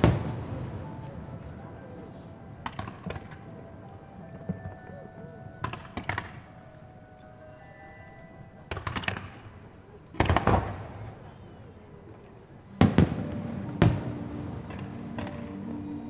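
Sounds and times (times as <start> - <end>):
fireworks bursting: 0.0 - 3.6, 5.6 - 6.8, 8.6 - 11.4, 12.7 - 16.0
faint music: 0.0 - 16.0.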